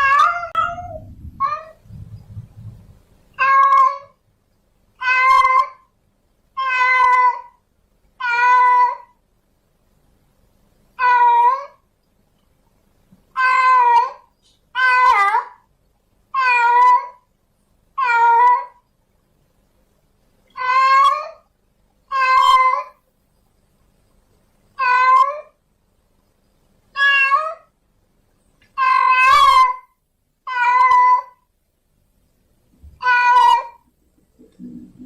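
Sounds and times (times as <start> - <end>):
cat meowing loudly: 0.0 - 1.8, 3.4 - 4.2, 5.0 - 5.9, 6.6 - 7.6, 8.2 - 9.1, 11.0 - 11.8, 13.4 - 15.6, 16.3 - 17.2, 18.0 - 18.8, 20.5 - 21.5, 22.1 - 23.0, 24.8 - 25.6, 26.9 - 27.7, 28.7 - 31.4, 32.9 - 33.9.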